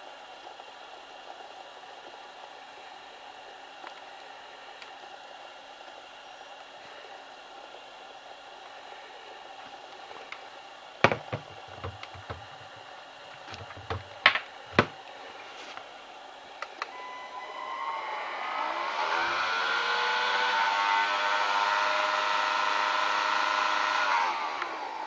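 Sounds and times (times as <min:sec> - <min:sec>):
vacuum cleaner motor whine: 0:16.8 - 0:25.0.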